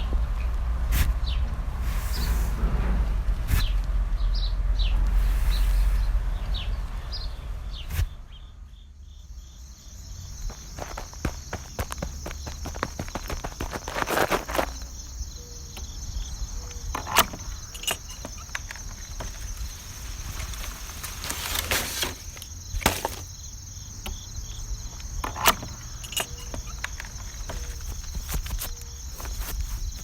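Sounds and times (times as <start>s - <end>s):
low rumble: 0.0s - 9.2s
high-pitched insect chorus: 8.3s - 30.0s
louder knocks or crunches: 21.0s - 23.4s.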